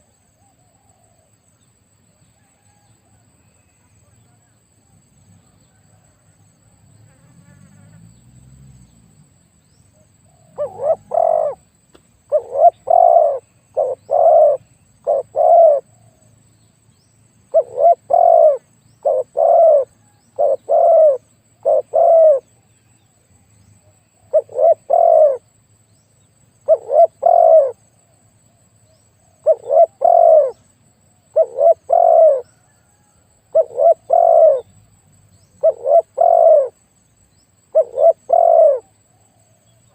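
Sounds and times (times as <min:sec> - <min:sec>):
dove cooing: 0:10.4 - 0:11.6, 0:12.3 - 0:16.2, 0:17.5 - 0:22.5, 0:24.2 - 0:25.4, 0:26.7 - 0:27.8, 0:29.2 - 0:30.6, 0:31.2 - 0:34.7, 0:35.6 - 0:36.8, 0:37.7 - 0:39.6.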